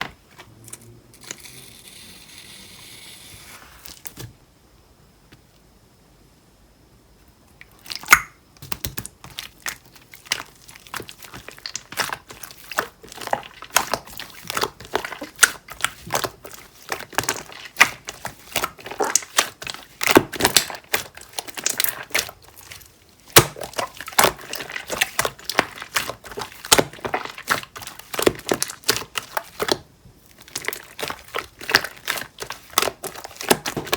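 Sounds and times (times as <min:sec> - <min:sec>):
slime squished by hand: 0:07.8 - 0:33.9.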